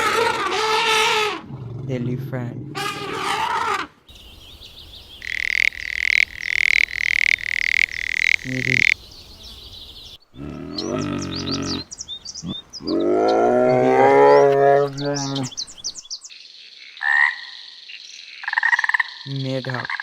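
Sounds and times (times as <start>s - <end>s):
low animal calls: 0.0s - 4.0s, 5.2s - 9.6s, 10.3s - 16.0s
high bird chirps: 4.1s - 16.4s
frog croaking: 5.1s - 9.0s, 10.3s - 15.8s, 16.6s - 20.0s.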